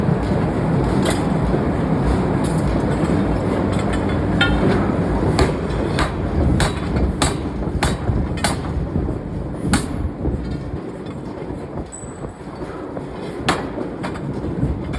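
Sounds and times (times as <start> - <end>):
heavy machinery rumbling: 0.0 - 14.9
sharp metallic clanks: 2.4 - 8.8.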